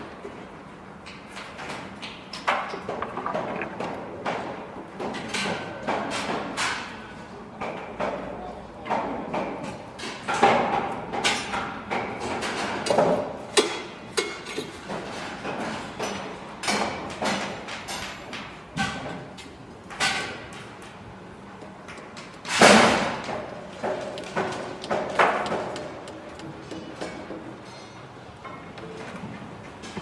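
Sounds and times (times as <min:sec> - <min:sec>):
hammering and knocking: 0:02.5 - 0:06.5.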